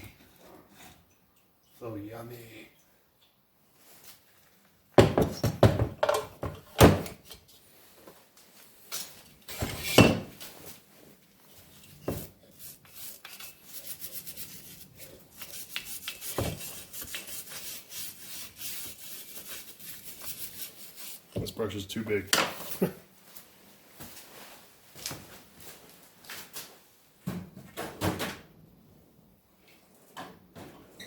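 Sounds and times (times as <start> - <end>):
wire brush scrubbing metal: 11.8 - 21.3.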